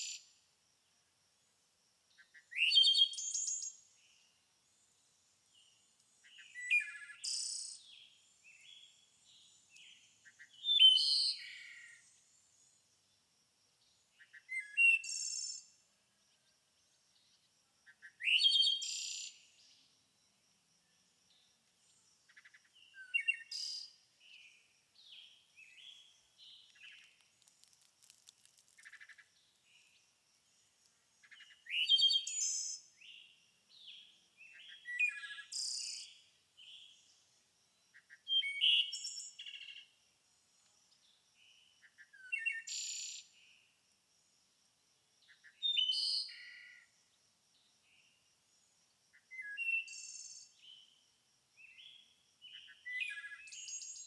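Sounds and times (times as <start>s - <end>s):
soft bird chirps: 2.2s - 12.8s, 21.3s - 37.3s.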